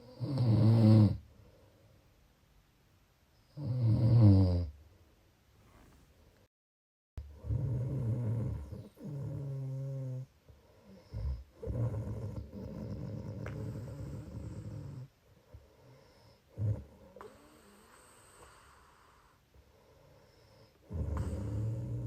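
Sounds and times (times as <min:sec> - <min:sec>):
snoring: 0:00.0 - 0:01.2, 0:03.5 - 0:04.7, 0:07.2 - 0:15.1, 0:15.8 - 0:19.4, 0:20.1 - 0:22.0
short snort: 0:20.9 - 0:22.0.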